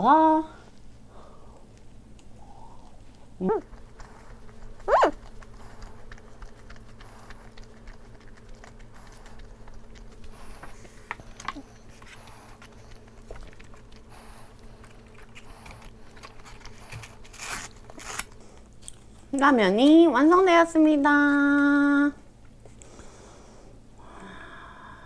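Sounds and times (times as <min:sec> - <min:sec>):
person chewing: 0:03.6 - 0:19.1.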